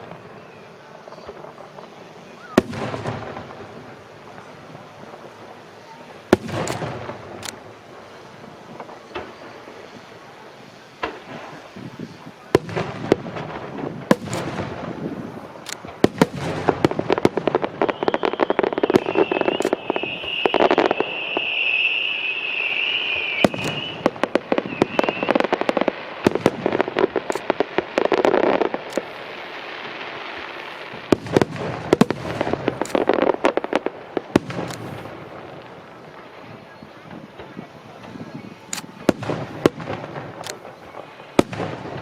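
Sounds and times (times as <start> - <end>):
fireworks bangs and crackling: 0.0 - 42.0
high wavering whistle: 17.8 - 25.5.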